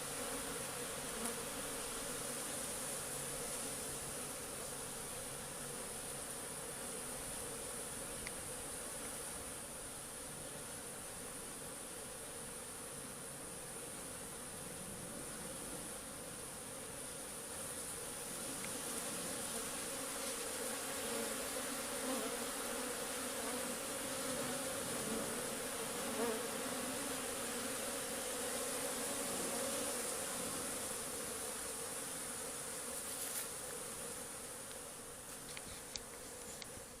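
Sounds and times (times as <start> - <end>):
honeybees buzzing: 0.0 - 12.9, 16.8 - 37.0.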